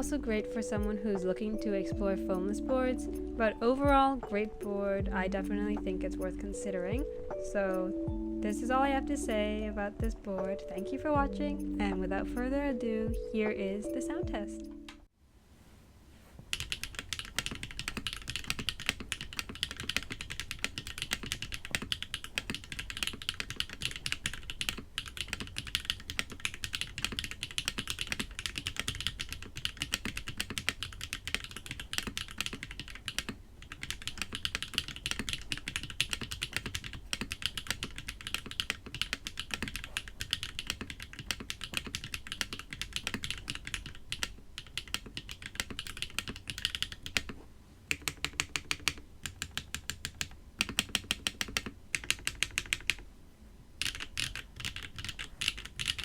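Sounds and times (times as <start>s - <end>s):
fast typing on mechanical keyboard: 16.5s - 53.0s, 53.8s - 56.0s.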